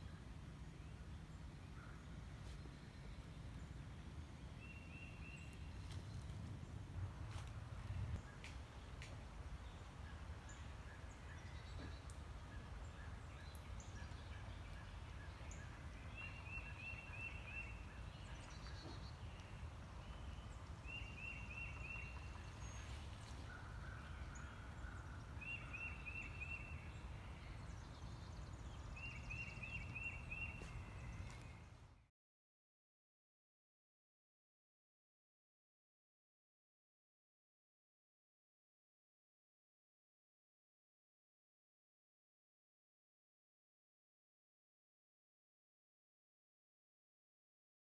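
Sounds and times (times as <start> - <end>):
low outdoor rumble: 0.0 - 25.4.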